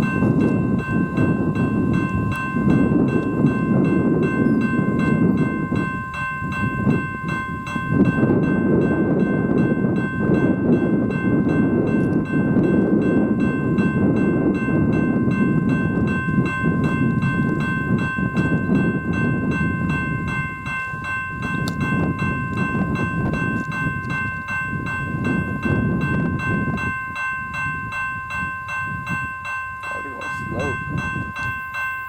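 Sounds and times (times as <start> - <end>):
freight train rumble: 0.0 - 32.0
high ringing tones: 0.0 - 32.0.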